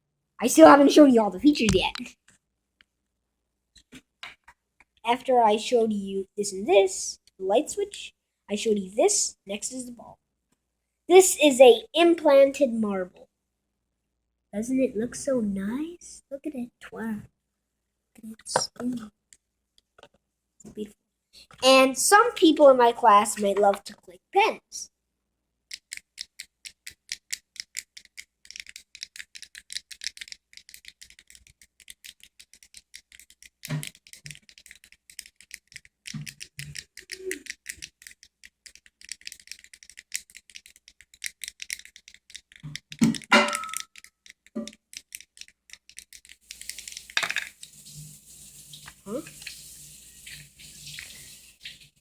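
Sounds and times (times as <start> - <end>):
steady hiss: 46.5 - 52.0.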